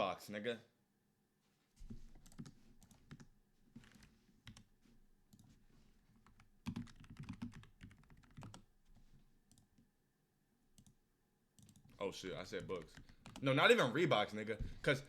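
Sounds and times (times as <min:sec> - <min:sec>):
faint keyboard typing: 0:01.9 - 0:09.9, 0:10.8 - 0:11.0, 0:11.6 - 0:13.6.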